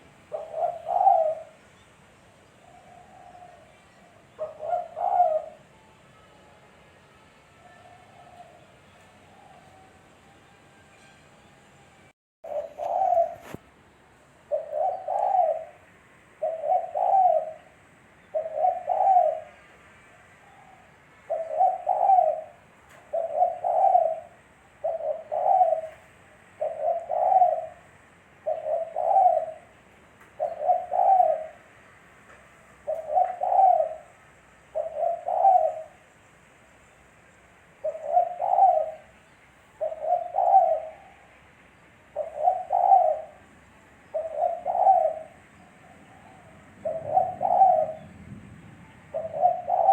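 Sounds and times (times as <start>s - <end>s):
dove cooing: 0.0s - 1.6s, 2.6s - 5.8s, 7.6s - 10.1s, 12.4s - 13.6s, 14.5s - 19.6s, 20.4s - 31.7s, 32.8s - 36.1s, 37.8s - 39.2s, 39.8s - 48.2s, 49.0s - 49.9s
faint bird chirps: 0.0s - 13.6s.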